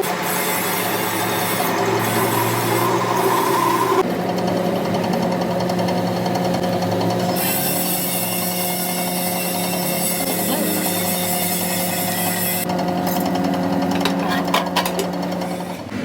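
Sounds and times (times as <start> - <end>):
metal lathe humming and rattling: 0.0 - 16.0.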